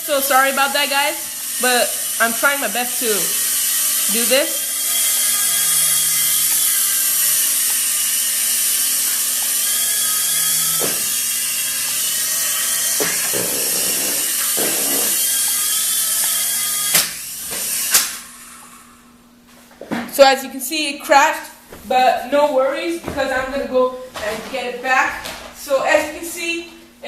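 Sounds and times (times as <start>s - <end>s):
toy helicopter motor whine: 0.0s - 19.0s
helicopter crashing knock: 12.1s - 15.3s.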